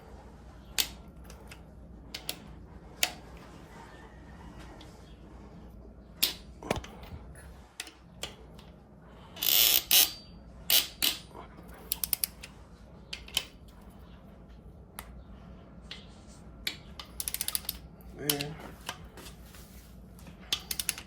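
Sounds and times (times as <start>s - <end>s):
torque wrench ratcheting: 9.4s - 11.2s
sharp metal clicks and knocks: 16.7s - 18.5s.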